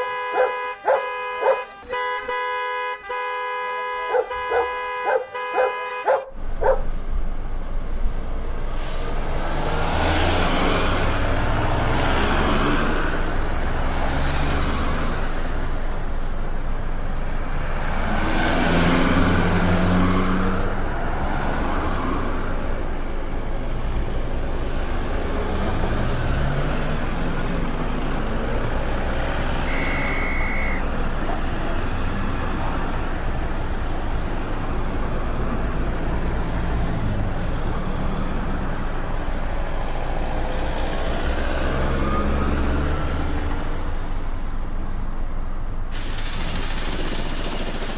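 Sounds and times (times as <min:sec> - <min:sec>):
car and truck engines passing: 0:00.0 - 0:47.9
short high beep: 0:29.6 - 0:30.9.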